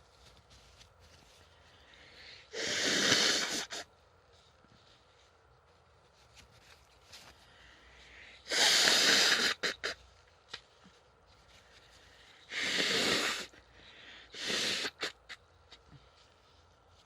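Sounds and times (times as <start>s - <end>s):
person sniffing: 1.7s - 3.9s, 7.5s - 10.1s, 11.9s - 16.2s
person blowing nose: 2.5s - 3.9s, 8.4s - 10.1s, 12.4s - 13.6s, 14.2s - 15.4s.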